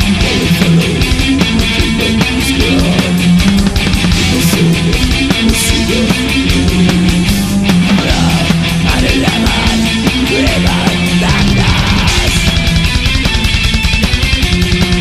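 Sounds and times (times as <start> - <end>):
distorted guitars: 0.0 - 15.0
fast drum beat: 0.0 - 15.0
lead guitar bending pitch: 9.7 - 15.0.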